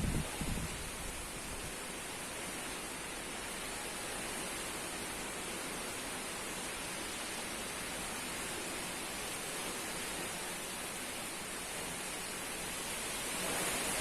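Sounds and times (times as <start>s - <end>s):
strong wind blowing: 0.0s - 1.7s.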